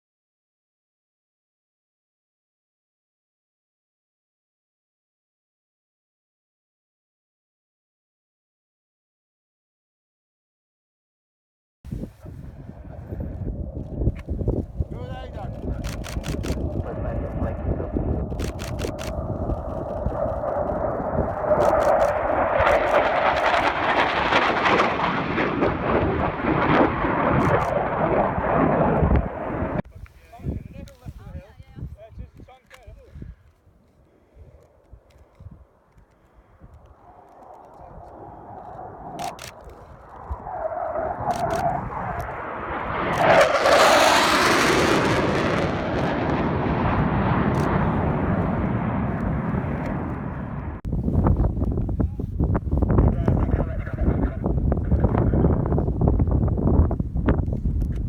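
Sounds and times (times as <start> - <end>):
jet engine rumble with crackle: 12.2 - 29.8, 34.4 - 58.0.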